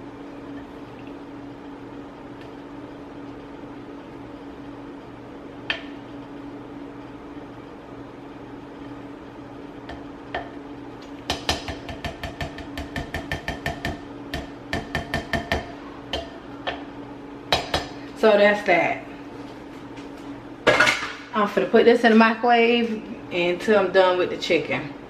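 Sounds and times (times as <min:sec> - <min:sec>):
steady low hum: 0:00.0 - 0:25.0
spoon knocking against bowl: 0:11.3 - 0:16.8.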